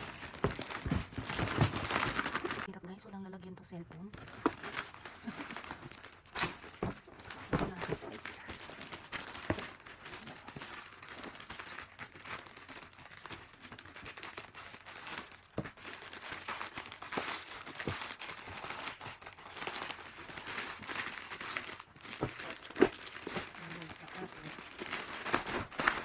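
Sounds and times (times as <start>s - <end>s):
packaging crinkling and rustling: 0.0s - 2.7s, 4.0s - 26.0s.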